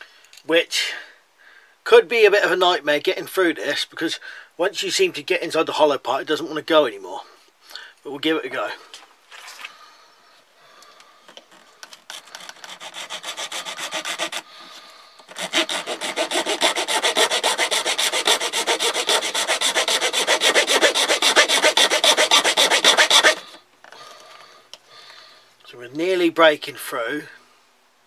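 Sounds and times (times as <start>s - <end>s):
saw blade sawing through metal tube: 12.1s - 14.5s, 15.3s - 23.6s.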